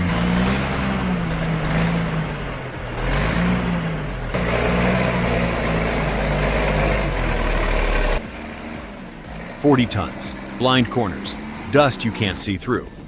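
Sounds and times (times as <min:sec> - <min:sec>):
heavy truck engine running: 0:00.0 - 0:13.0.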